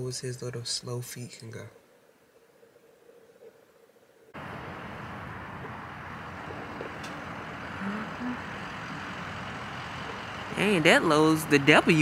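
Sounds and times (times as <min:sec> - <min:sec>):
vehicle road noise: 0:04.4 - 0:12.0.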